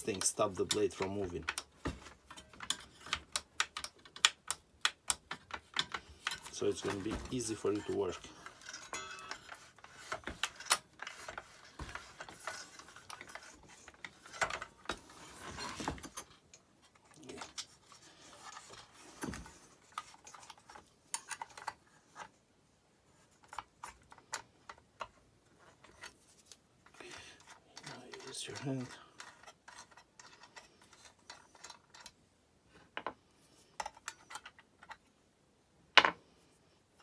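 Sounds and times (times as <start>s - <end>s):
saw being handled: 5.4s - 16.2s.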